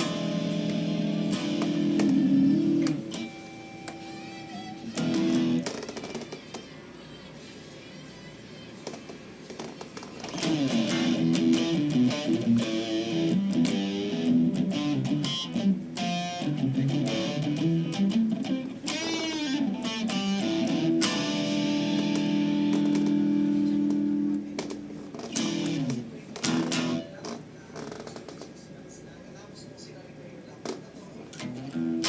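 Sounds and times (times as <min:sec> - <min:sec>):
overdriven electric guitar: 0:00.0 - 0:06.3, 0:10.2 - 0:27.1, 0:31.3 - 0:32.0.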